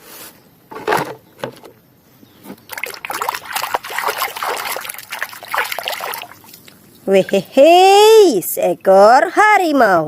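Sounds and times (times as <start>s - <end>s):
water running and splashing: 2.7s - 6.8s.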